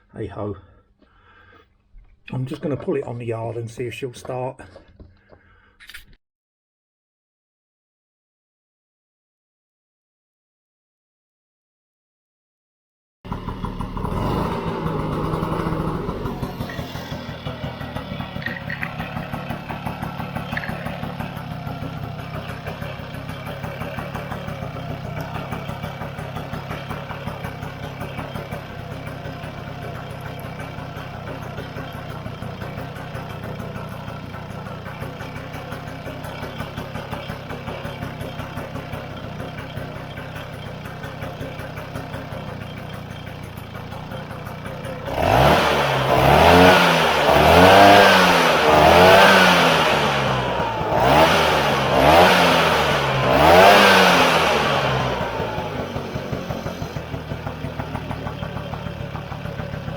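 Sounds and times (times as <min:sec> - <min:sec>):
scooter engine idling and revving: 0:13.2 - 0:59.9.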